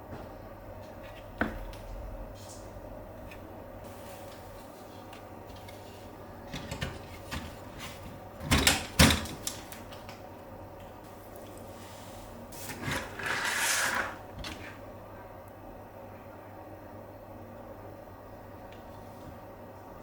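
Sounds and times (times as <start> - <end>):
steady low hum: 0.0 - 20.0
sliding scrape: 11.8 - 14.2.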